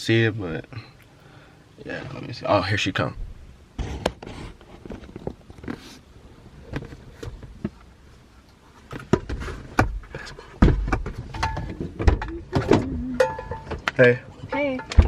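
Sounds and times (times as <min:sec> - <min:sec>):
knocks and rustling inside car: 0:08.9 - 0:12.9.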